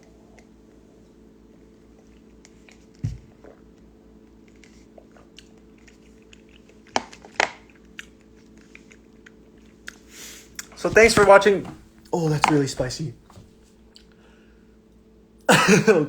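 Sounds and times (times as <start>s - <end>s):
person eating soup: 9.8s - 14.2s
dull thump: 10.8s - 13.5s.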